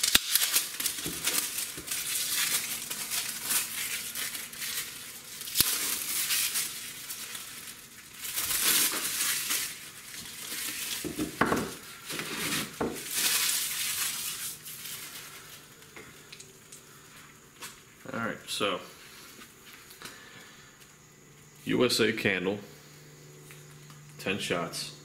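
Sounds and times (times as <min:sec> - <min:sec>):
plastic packaging crinkling: 0:00.0 - 0:18.1.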